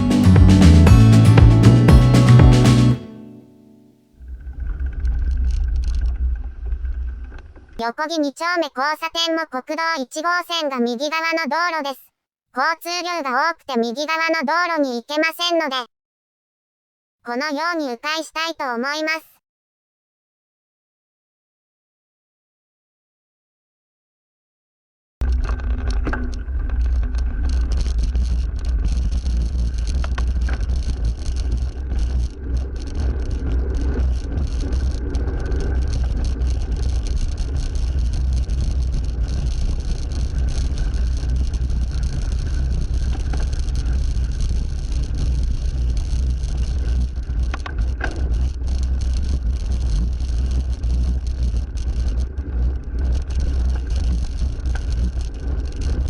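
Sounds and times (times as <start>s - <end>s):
wind rumble on microphone: 4.3s - 7.8s, 25.2s - 56.0s.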